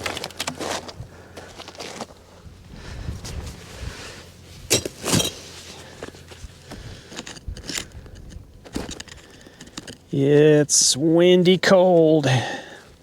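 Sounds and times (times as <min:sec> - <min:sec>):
low steady rumble: 0:00.0 - 0:11.3
gear being handled: 0:04.7 - 0:10.0.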